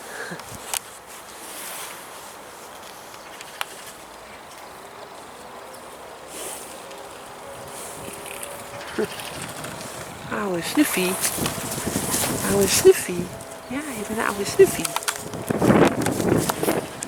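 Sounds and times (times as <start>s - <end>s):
rustling: 0.5s - 17.0s
horse snuffling: 8.0s - 17.0s
sharp clicks: 14.7s - 16.6s.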